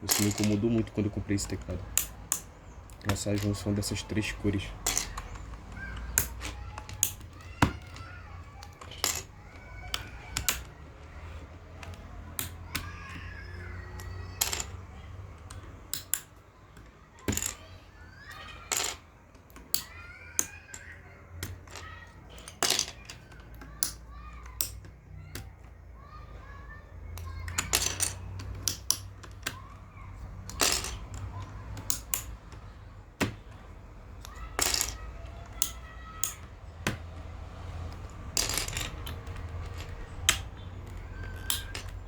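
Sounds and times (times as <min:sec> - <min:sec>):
keycaps clicking and clacking: 0:00.0 - 0:42.0.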